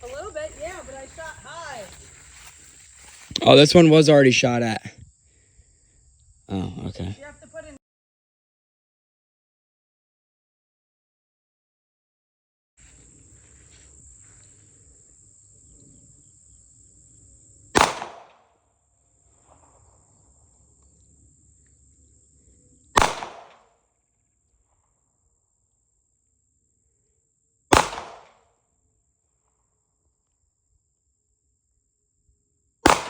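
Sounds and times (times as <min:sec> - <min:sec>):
gunshots: 0:17.8 - 0:18.4, 0:23.0 - 0:23.6, 0:27.7 - 0:28.4.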